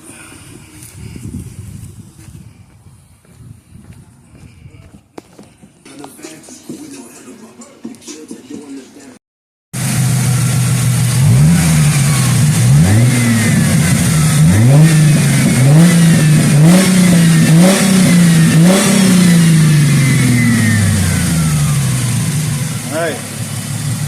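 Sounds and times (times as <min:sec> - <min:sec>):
car engine revving: 0:09.8 - 0:24.0.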